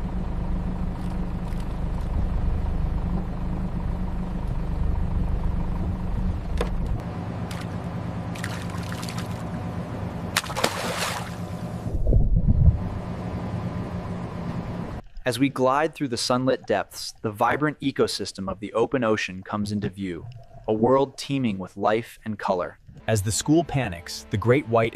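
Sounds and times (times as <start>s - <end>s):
bubbling rushing water: 10.3s - 12.6s, 19.9s - 21.4s
low underwater rumble: 10.6s - 13.0s, 19.8s - 21.4s.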